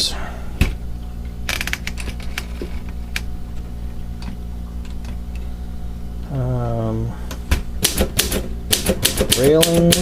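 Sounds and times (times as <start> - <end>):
low hum: 0.0 - 7.8
typewriter keys clacking: 8.2 - 10.0.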